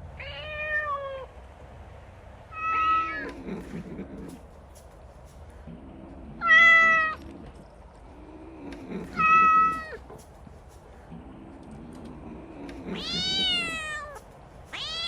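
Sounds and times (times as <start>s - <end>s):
kitten meowing: 13.0s - 15.0s.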